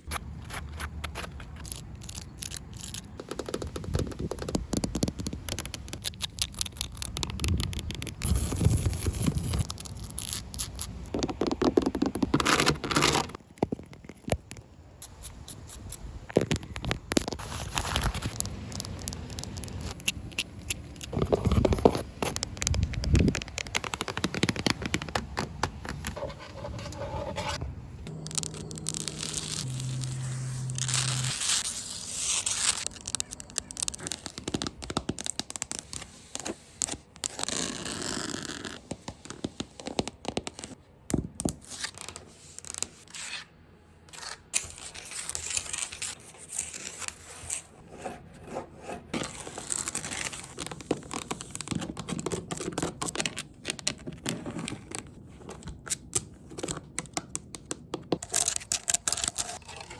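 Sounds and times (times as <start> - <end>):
scratching on a floor: 17.2 - 40.8.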